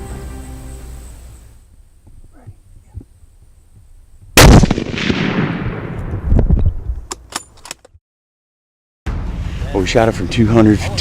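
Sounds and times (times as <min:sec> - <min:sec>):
rifle shot: 0:04.4 - 0:06.3.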